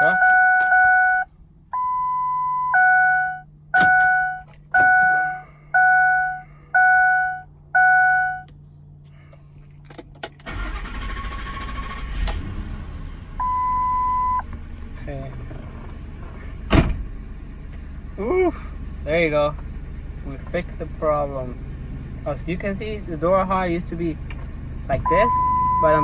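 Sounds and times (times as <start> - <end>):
car warning chime dings: 0.0 - 8.5, 13.4 - 14.4, 25.0 - 26.0
ignition clicks: 0.0 - 8.6, 9.8 - 12.5
car engine cranking and running: 0.0 - 26.0.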